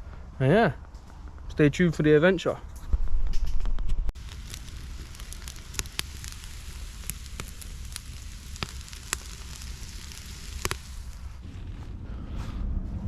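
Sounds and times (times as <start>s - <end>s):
campfire crackling and popping: 3.3s - 11.7s.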